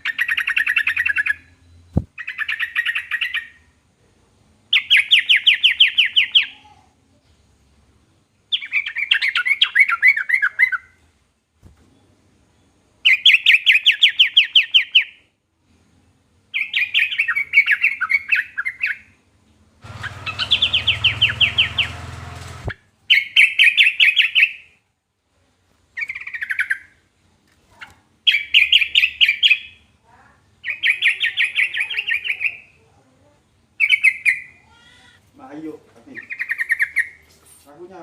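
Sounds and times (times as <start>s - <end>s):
bird singing chattering phrases: 0.0s - 1.6s, 4.7s - 6.6s, 19.8s - 22.2s, 30.6s - 32.8s, 33.8s - 37.2s.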